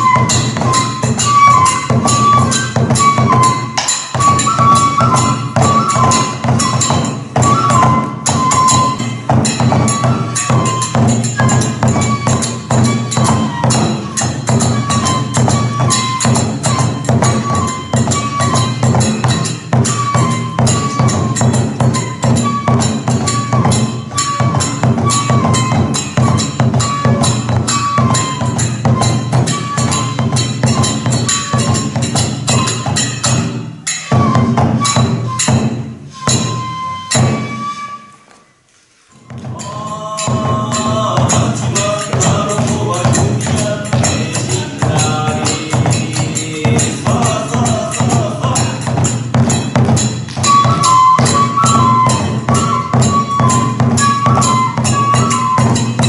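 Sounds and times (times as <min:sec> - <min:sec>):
bamboo flute phrase: 0:00.0 - 0:33.1, 0:34.0 - 0:40.2, 0:50.4 - 0:56.0
hand cymbals clashing: 0:00.0 - 0:37.8, 0:39.5 - 0:56.0
taiko drum beating: 0:00.0 - 0:37.9, 0:39.2 - 0:56.0.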